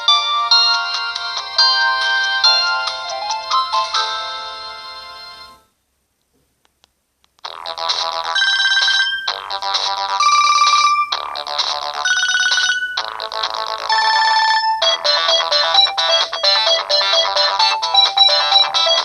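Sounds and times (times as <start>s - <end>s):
bright bell-like tune: 0.0s - 4.5s
phone ringtone through loudspeaker: 0.0s - 5.6s, 8.2s - 19.0s.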